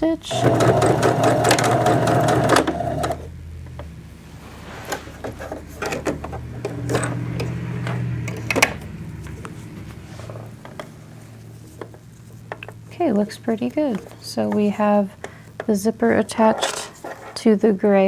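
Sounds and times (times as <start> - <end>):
sewing machine stitching: 0.2 - 3.3, 4.9 - 8.0
fabric and machine clicks: 0.3 - 3.3, 4.8 - 8.8.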